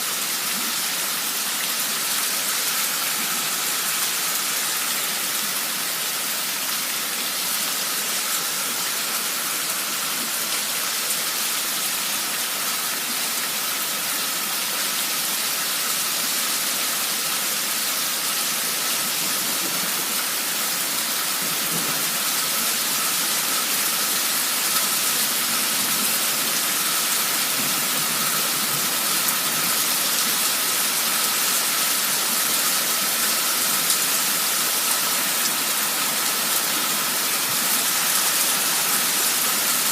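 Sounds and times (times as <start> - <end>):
heavy rain downpour: 0.0 - 39.9.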